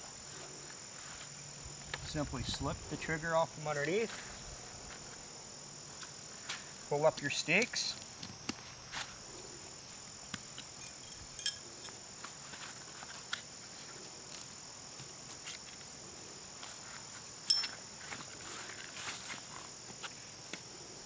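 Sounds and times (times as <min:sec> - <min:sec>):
crickets chirring: 0:00.0 - 0:21.0
metallic clink: 0:10.8 - 0:12.0, 0:17.4 - 0:17.8.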